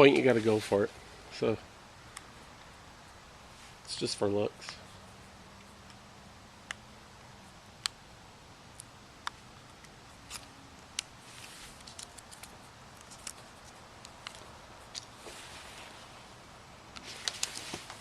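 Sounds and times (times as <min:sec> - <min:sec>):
hands rustling: 0:09.6 - 0:18.0.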